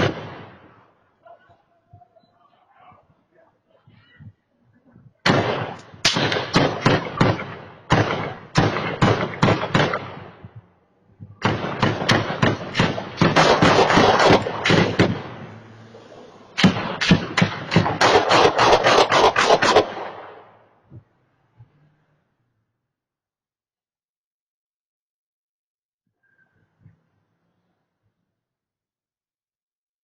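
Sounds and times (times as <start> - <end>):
gunshots in rapid volleys: 0.0 - 1.5, 5.2 - 10.7, 11.3 - 15.6, 16.2 - 20.7.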